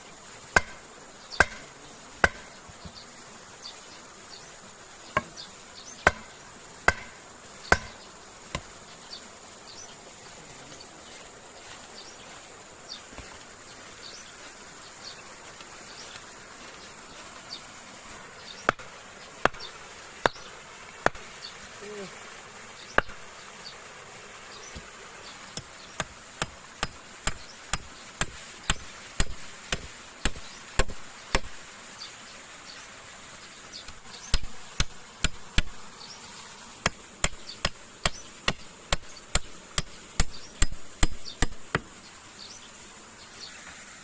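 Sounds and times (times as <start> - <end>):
high insect drone: 0.0 - 44.0
tool knocking on wood: 1.4 - 1.6, 2.2 - 3.0, 6.9 - 8.7.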